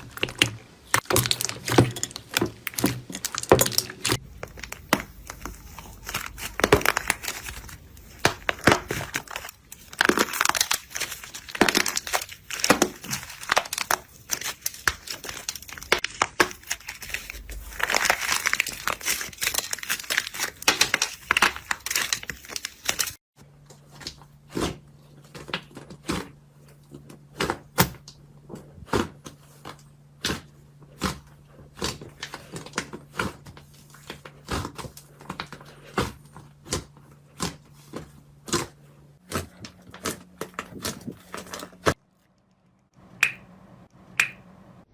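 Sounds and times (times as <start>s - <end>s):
low steady hum: 0.0s - 20.3s
slime squeezed and crackling: 0.0s - 23.2s.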